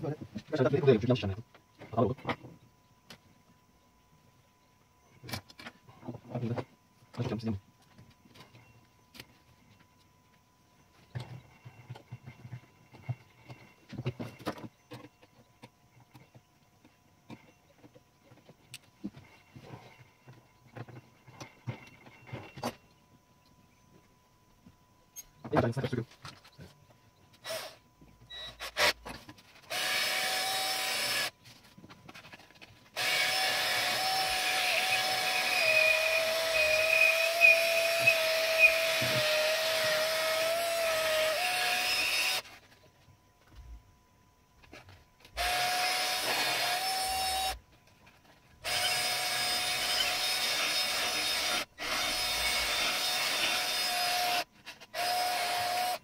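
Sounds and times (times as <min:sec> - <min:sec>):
power tool motor whine: 0:29.7 - 0:31.3, 0:33.0 - 0:42.6, 0:45.4 - 0:47.6, 0:48.6 - 0:56.0.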